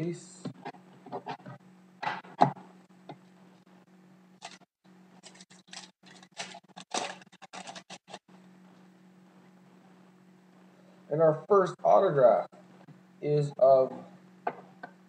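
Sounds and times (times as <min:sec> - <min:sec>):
trading cards shuffling: 0:05.2 - 0:08.2.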